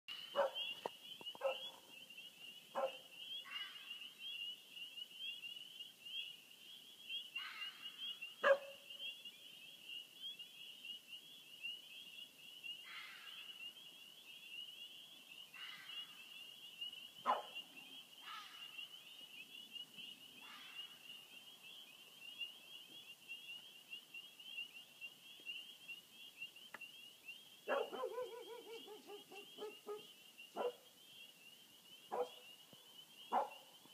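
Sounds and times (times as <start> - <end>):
animal bark-like calls: 0.3 - 0.8, 1.4 - 1.8, 2.7 - 3.1, 8.4 - 8.9, 17.2 - 17.6, 27.6 - 30.8, 32.1 - 32.4, 33.3 - 33.6.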